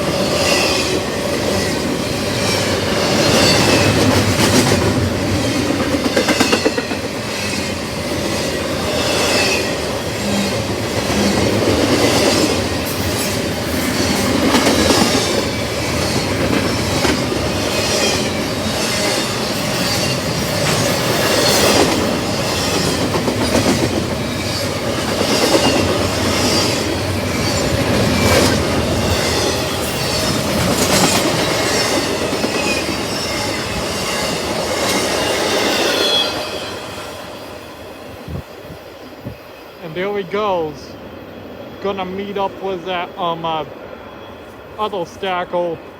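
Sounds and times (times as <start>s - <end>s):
wheels clacking over rail joints: 0.1s - 36.0s.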